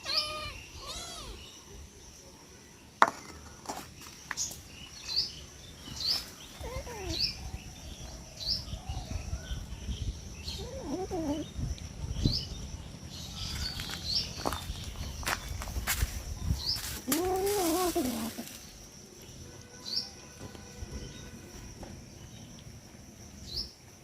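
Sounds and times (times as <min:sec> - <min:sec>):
faint cat meows: 0:00.0 - 0:01.4, 0:06.6 - 0:07.4, 0:10.6 - 0:11.4
small bird chirping: 0:00.0 - 0:01.8, 0:03.2 - 0:20.2.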